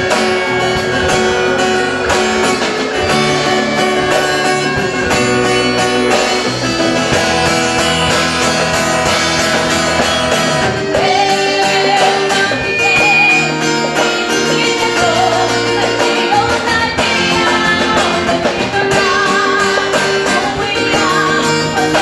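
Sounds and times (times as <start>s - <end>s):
worship band music with guitars: 0.0s - 22.0s.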